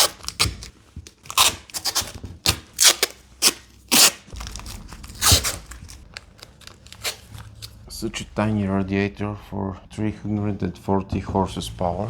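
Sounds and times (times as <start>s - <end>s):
low rumble: 4.3s - 12.0s.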